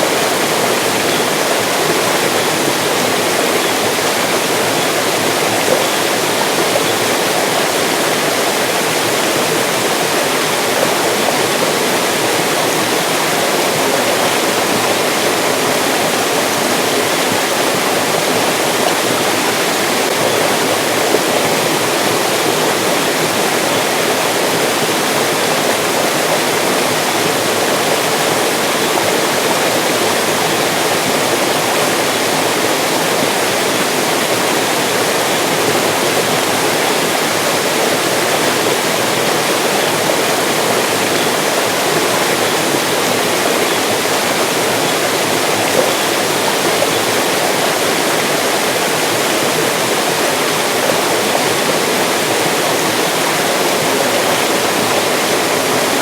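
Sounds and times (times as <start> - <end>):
stream rushing over rocks: 0.0 - 56.0.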